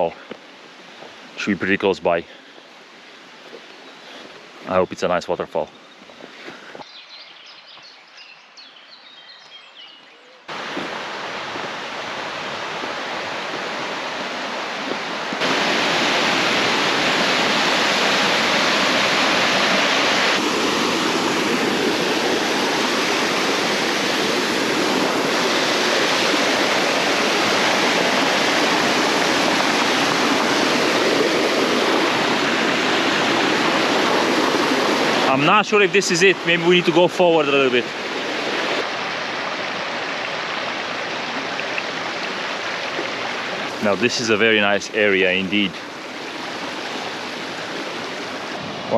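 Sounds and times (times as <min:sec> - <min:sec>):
waterfall rushing: 0:10.5 - 0:48.9.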